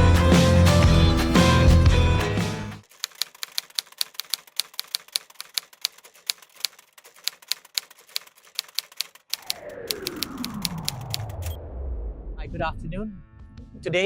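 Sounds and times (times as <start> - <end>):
typewriter keys clacking: 2.8 - 11.4.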